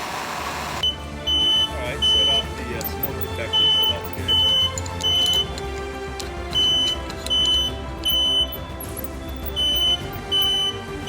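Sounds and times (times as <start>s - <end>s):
smoke alarm beeping: 0.8s - 2.6s, 3.2s - 5.6s, 6.5s - 11.0s
background music: 0.8s - 11.0s.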